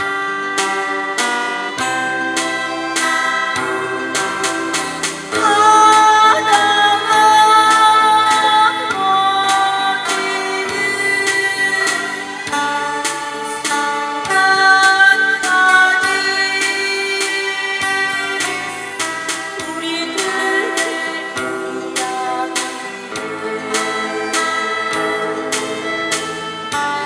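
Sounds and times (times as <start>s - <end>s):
instrumental accompaniment: 0.0s - 27.0s
woman singing a slow ballad: 3.6s - 12.8s, 13.4s - 18.8s, 19.6s - 26.0s.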